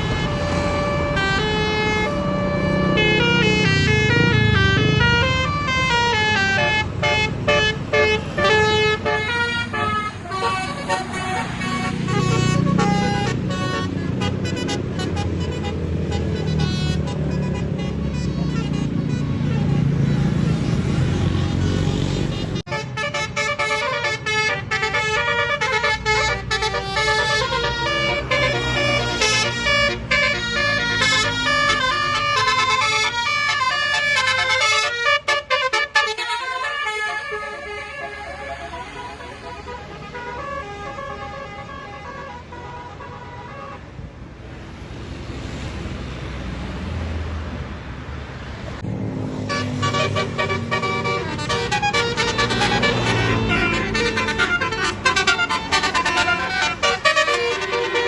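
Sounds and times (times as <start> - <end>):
bus engine running: 0.0 - 43.2, 47.6 - 58.0
bus musical horn playing tune: 0.0 - 43.8, 49.4 - 58.0
outdoor noise: 0.0 - 58.0
road noise: 0.0 - 58.0.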